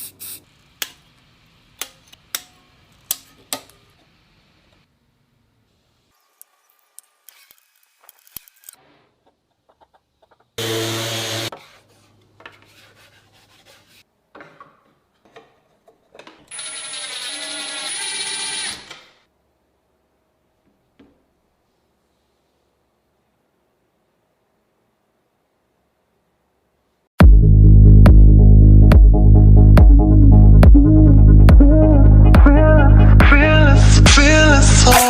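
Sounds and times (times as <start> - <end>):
power tool running: 10.6 - 11.5, 16.5 - 19.0.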